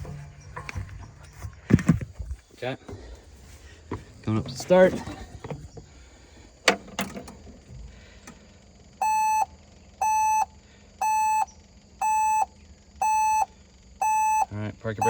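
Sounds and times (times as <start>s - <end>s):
pulsed warning beeps: 9.0s - 15.0s.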